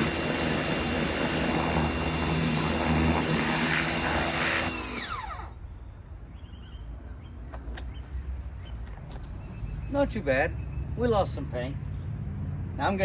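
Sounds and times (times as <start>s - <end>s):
pressure washer whining: 0.0s - 5.6s.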